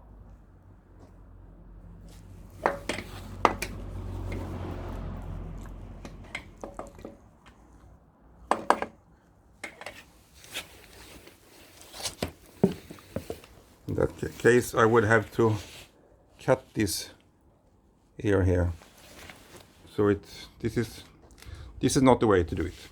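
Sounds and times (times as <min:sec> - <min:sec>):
metal clinks and knocks: 0:02.6 - 0:04.6, 0:06.0 - 0:07.3.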